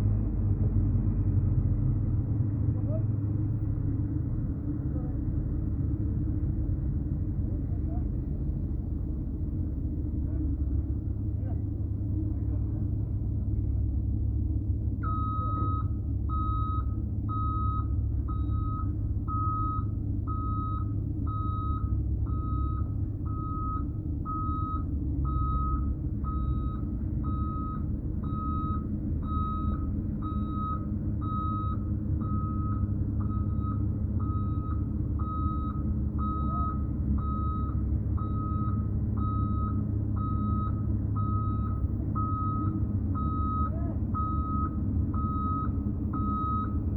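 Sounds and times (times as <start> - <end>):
large engine running: 0.0 - 46.9
reversing alarm beeps: 15.0 - 46.9.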